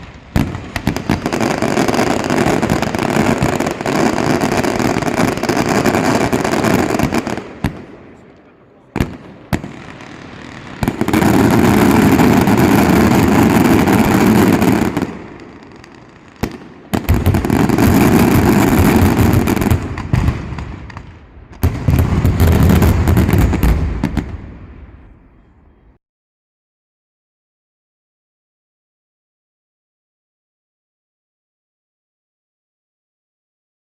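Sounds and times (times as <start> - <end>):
fireworks bangs and crackling: 0.0 - 25.4.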